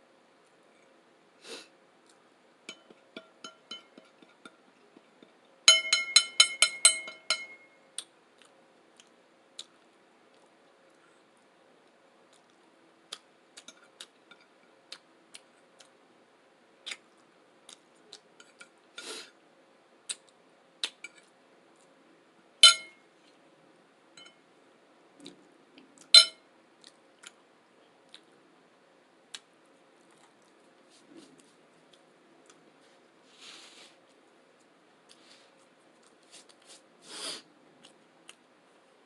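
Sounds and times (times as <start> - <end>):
cutlery tapping on a plate: 2.7 - 7.7, 22.6 - 23.0, 26.2 - 26.4
loud ringing clinks: 5.7 - 7.8, 22.6 - 23.0.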